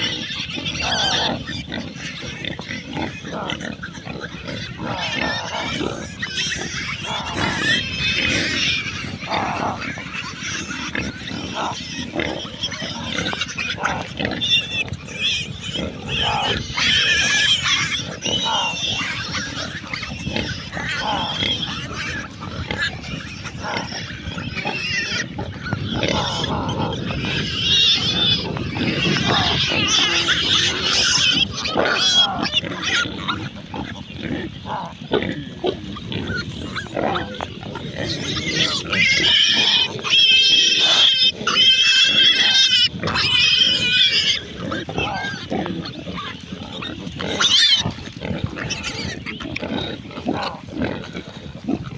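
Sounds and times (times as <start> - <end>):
pigs grunting and squealing: 0.0 - 51.9.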